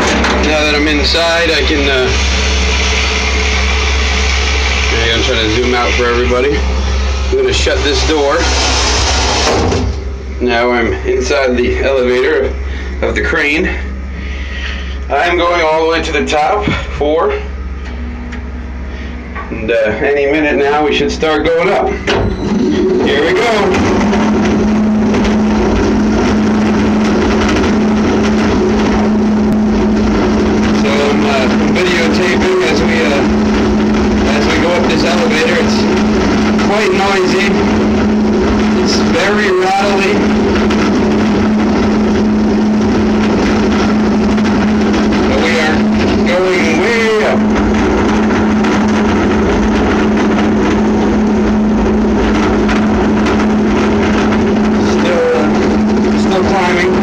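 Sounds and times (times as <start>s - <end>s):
elevator cab rattling: 0.0s - 2.4s, 19.3s - 57.0s
elevator drive humming: 0.0s - 57.0s.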